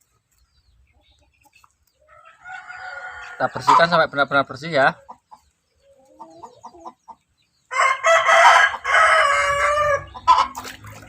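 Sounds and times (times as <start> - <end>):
rooster crowing: 2.1 - 3.8, 7.7 - 10.5.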